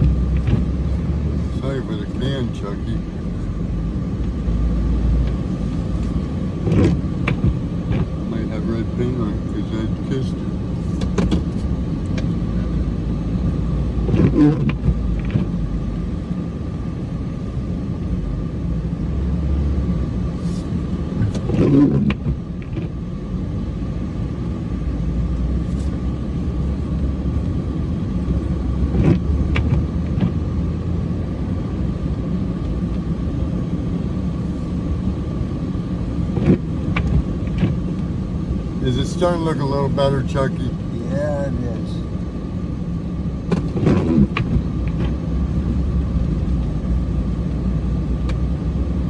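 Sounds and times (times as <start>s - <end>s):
diesel truck engine rumble: 0.0s - 49.0s.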